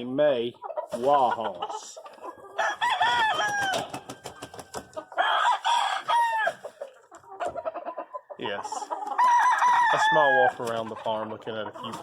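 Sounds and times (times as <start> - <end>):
hens clucking: 0.0 - 12.0
roosters crowing: 2.3 - 6.8, 8.7 - 10.7.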